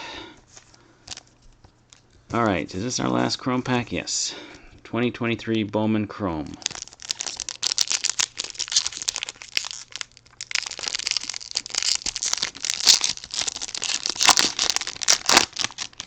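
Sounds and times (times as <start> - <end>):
foil wrapper tearing and crinkling: 6.6 - 16.0.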